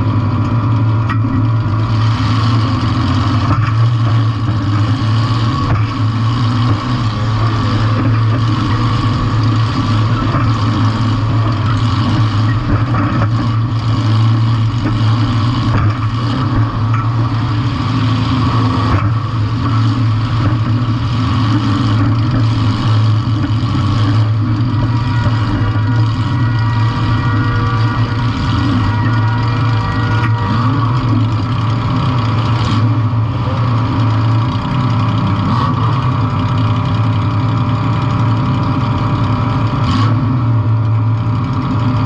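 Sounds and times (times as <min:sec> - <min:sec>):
car engines running loud: 0:00.0 - 0:42.0.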